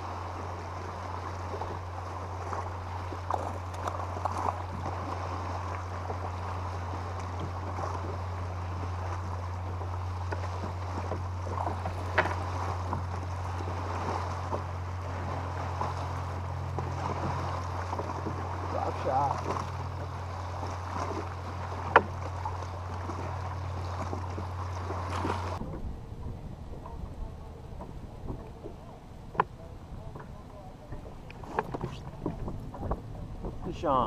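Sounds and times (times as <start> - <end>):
boat motor humming: 0.0 - 34.0
water splashing against hull: 0.0 - 34.0
light knocks: 21.9 - 22.2.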